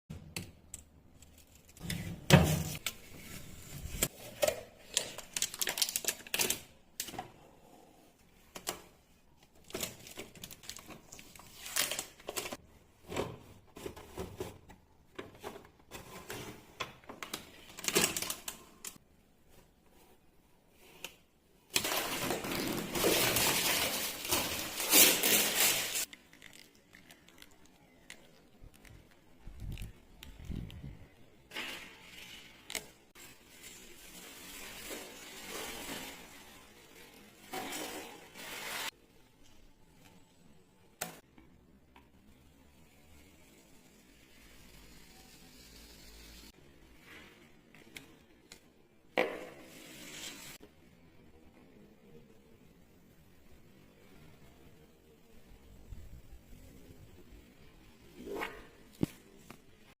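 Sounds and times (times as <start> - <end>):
plastic film crackling: 4.8 - 7.1, 9.4 - 12.6, 21.7 - 30.4.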